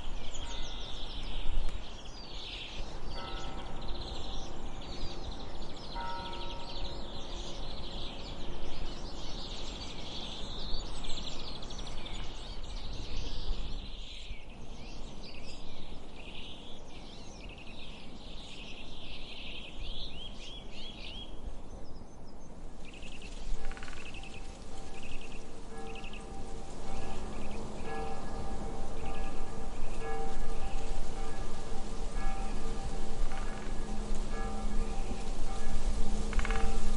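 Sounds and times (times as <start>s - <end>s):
church bell ringing: 0.0s - 1.3s, 2.8s - 9.4s, 23.4s - 36.9s
low steady background noise: 0.0s - 36.9s
small birds chirping: 0.0s - 36.9s.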